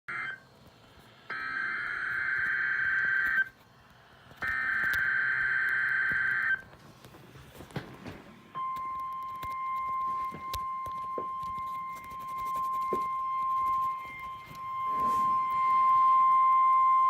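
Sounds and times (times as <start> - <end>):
steady alarm tone: 1.3 - 3.5, 4.4 - 6.7, 8.5 - 17.0
buzzy data screech: 11.6 - 16.4.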